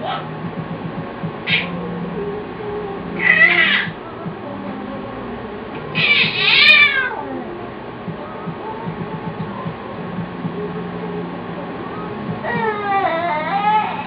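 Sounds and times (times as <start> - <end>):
cat meowing: 3.2 - 3.9, 6.0 - 7.2.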